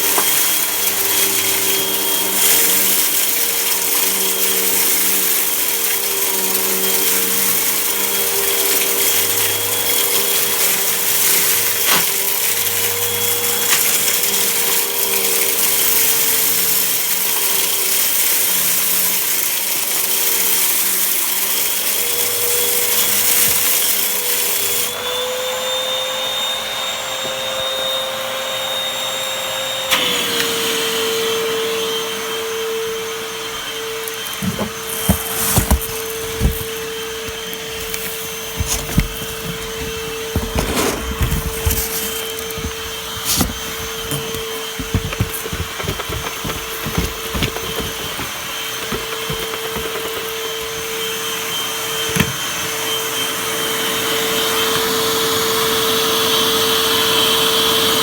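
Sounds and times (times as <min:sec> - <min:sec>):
grit rattling in vacuum: 0:00.0 - 0:25.0, 0:33.2 - 0:52.6
vacuum cleaner motor humming: 0:00.0 - 0:58.0.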